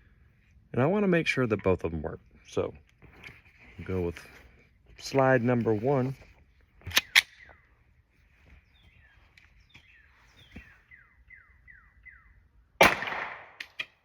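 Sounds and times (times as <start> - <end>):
birds chirping faintly: 2.3 - 12.8
pistol shots with echo: 12.8 - 13.6.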